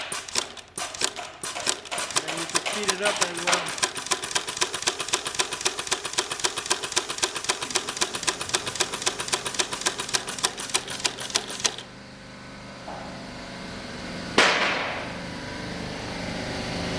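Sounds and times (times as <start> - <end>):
sewing machine needle clacking: 0.0 - 11.9.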